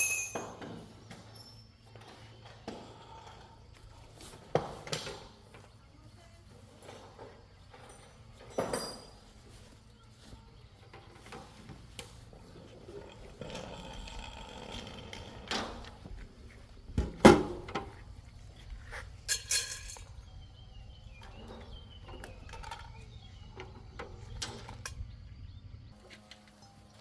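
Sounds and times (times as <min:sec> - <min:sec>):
knocks of objects being handled: 0:15.5 - 0:18.3
faint bird chirps: 0:17.9 - 0:26.0.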